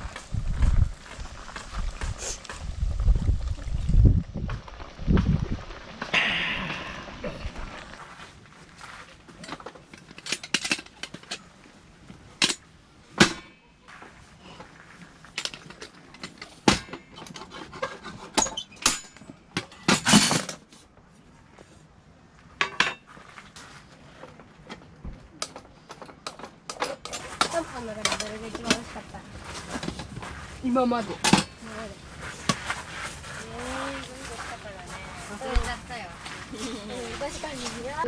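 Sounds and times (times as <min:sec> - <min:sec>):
tableware and cutlery clinking: 0:22.6 - 0:23.1.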